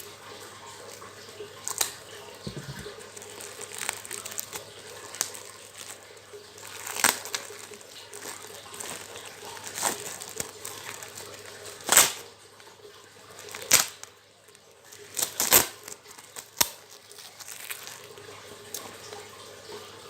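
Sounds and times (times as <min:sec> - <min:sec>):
packaging tearing: 0:01.6 - 0:06.0, 0:06.6 - 0:12.3, 0:13.4 - 0:14.1, 0:15.0 - 0:19.0
packaging rustling: 0:01.7 - 0:12.2, 0:13.4 - 0:14.1, 0:14.9 - 0:19.2.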